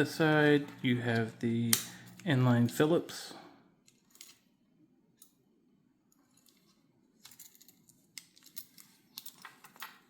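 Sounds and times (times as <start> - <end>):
small metal clicks: 6.1 - 10.0.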